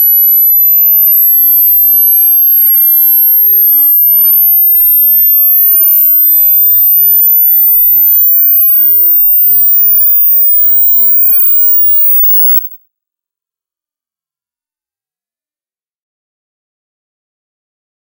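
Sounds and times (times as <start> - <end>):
rising sine test tone: 0.0 - 12.8.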